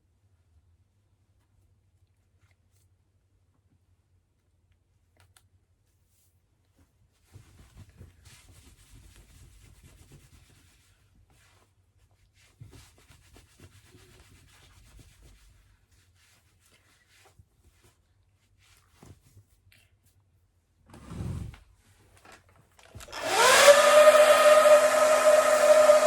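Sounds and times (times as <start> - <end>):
faint rubbing and rustling: 5.8 - 22.8.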